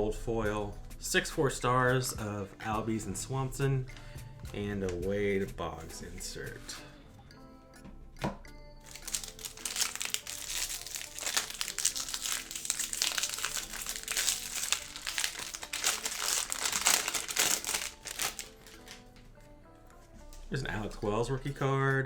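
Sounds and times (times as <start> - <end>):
plastic wrapper crinkling: 8.8 - 19.1.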